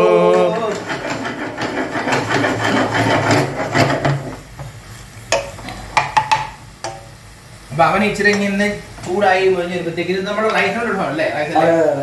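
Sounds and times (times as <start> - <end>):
utensil knocking on pan: 0.3 - 4.4, 5.3 - 7.0
spatula scraping frying pan: 0.3 - 4.8.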